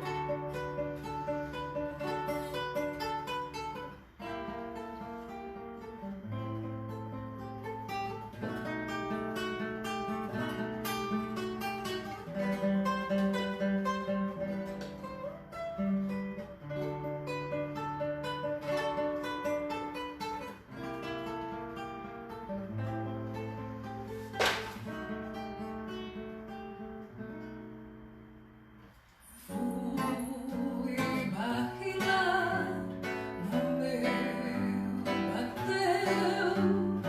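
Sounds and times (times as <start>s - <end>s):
acoustic guitar plucking: 0.0s - 37.0s.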